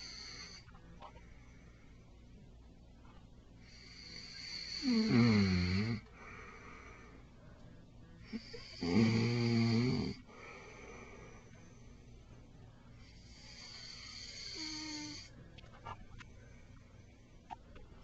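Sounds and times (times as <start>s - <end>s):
quiet breathing: 0.0s - 18.0s
man snoring: 3.8s - 6.0s, 8.3s - 10.6s, 13.2s - 15.3s.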